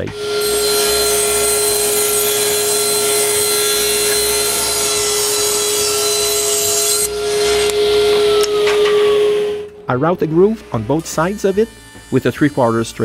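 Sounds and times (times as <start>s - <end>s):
power saw motor running: 0.0s - 13.0s
saw cutting through plywood: 0.0s - 13.0s.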